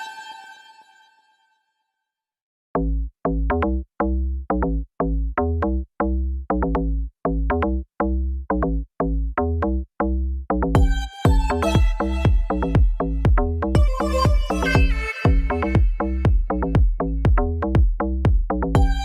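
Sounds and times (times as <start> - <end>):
electronic music with bass beat: 10.5 - 19.0.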